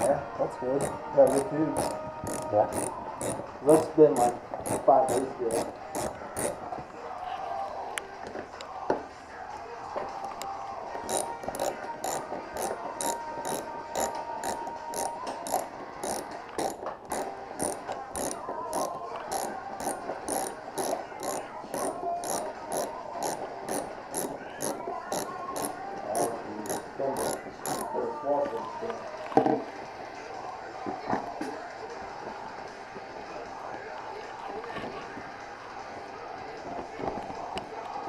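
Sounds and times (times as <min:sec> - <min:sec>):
ratchet wrench clicking: 0:00.0 - 0:00.2, 0:00.8 - 0:06.6, 0:11.1 - 0:27.9.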